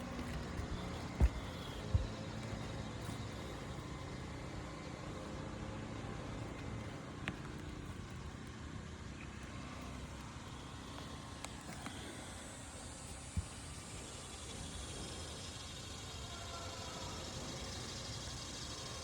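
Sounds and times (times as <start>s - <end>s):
constant background noise: 0.0s - 19.0s
engine-like hum: 0.0s - 19.0s.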